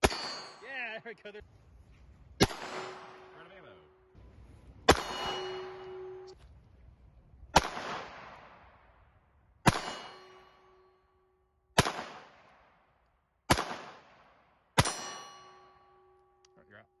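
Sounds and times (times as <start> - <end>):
steel target ringing: 0.0 - 0.8, 4.9 - 6.4, 9.6 - 11.5, 14.8 - 16.6
pistol shots with echo: 2.4 - 3.5, 4.9 - 6.2, 7.5 - 8.9, 9.6 - 10.4, 11.8 - 12.8, 13.5 - 15.1.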